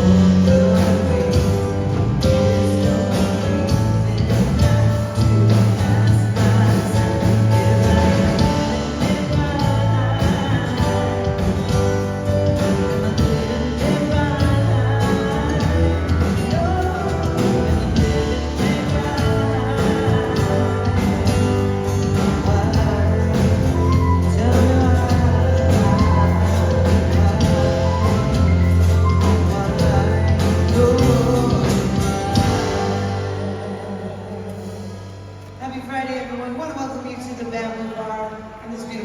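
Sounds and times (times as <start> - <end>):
person singing: 0.0 - 35.2
live band playing: 0.0 - 35.8
bass line: 0.0 - 37.7.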